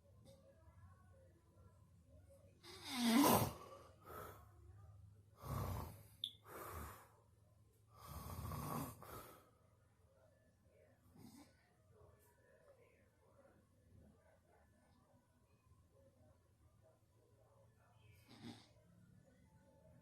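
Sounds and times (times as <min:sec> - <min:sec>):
loud snoring: 0:02.7 - 0:03.6, 0:05.4 - 0:06.1, 0:08.0 - 0:09.1.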